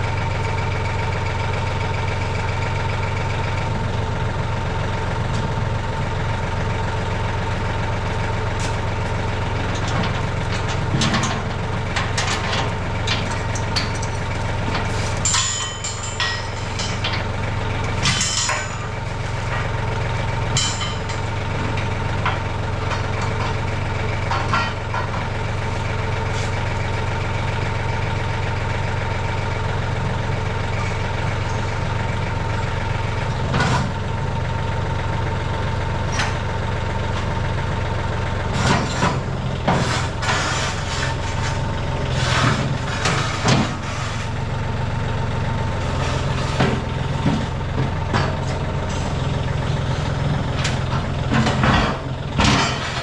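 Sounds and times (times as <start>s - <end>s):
engine idling: 0.0s - 53.0s
sharp knocks and clanks: 18.0s - 18.9s, 50.6s - 53.0s.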